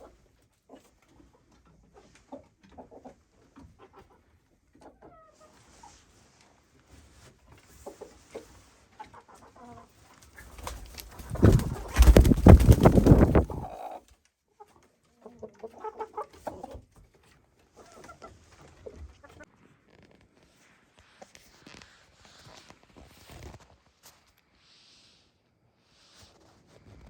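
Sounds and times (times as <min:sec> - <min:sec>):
chickens clucking softly: 0:00.0 - 0:06.4, 0:07.2 - 0:19.5.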